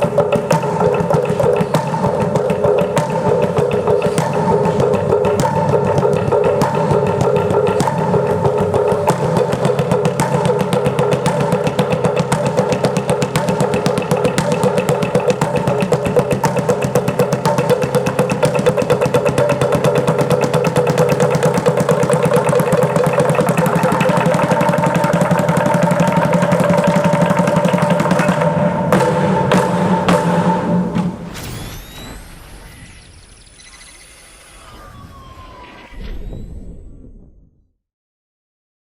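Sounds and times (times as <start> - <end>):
slit drums rolling: 0.0 - 31.4.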